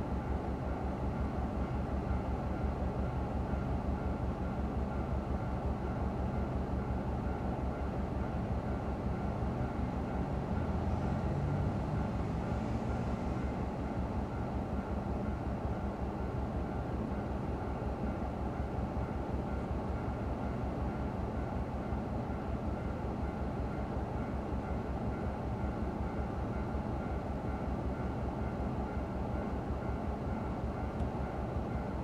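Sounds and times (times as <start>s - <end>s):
train passing: 0.0s - 32.0s.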